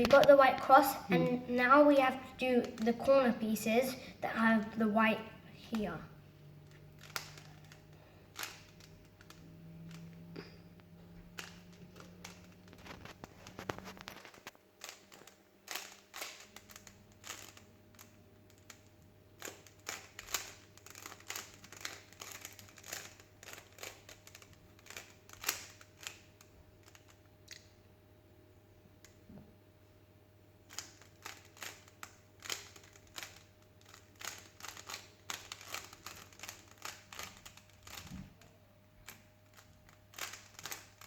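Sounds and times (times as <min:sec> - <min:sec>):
low steady hum: 0:00.0 - 0:41.0
puzzle cube plastic clicks: 0:06.6 - 0:27.7, 0:30.7 - 0:38.2, 0:39.0 - 0:41.0.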